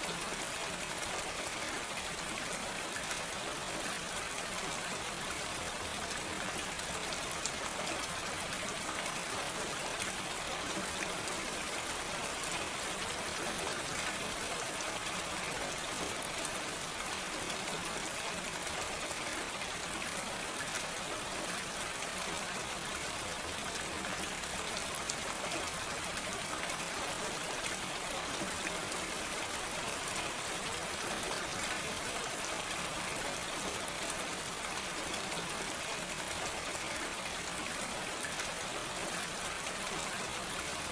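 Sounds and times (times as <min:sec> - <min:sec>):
steady gentle rain: 0:00.0 - 0:40.9.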